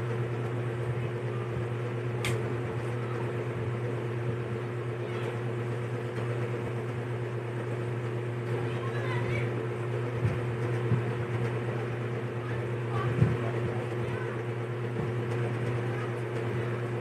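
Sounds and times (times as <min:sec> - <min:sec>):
electric fan humming: 0:00.0 - 0:17.0
sharp click: 0:02.2 - 0:02.4.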